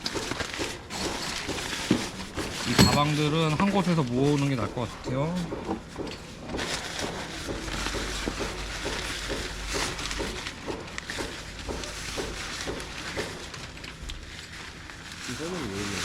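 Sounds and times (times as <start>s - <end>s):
rustling of bags: 0.0s - 16.0s
soft knocks: 2.4s - 3.3s.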